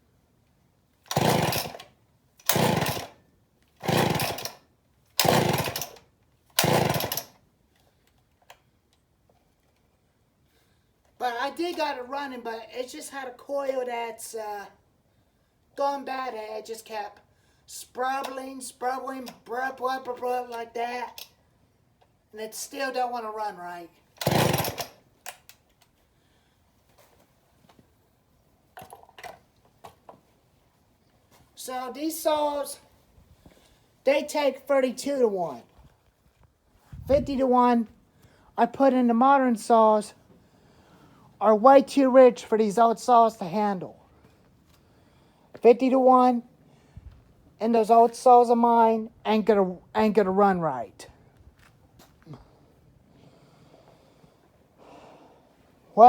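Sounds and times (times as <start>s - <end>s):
chainsaw being pull-started: 1.0s - 8.7s, 24.1s - 26.0s.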